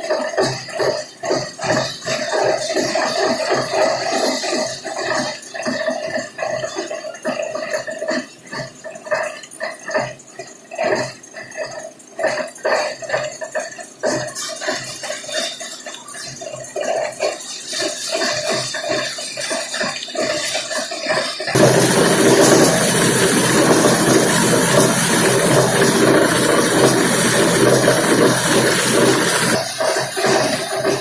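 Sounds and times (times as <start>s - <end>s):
dense rushing machine noise: 21.6s - 31.0s
recycling machinery clattering: 21.6s - 31.0s.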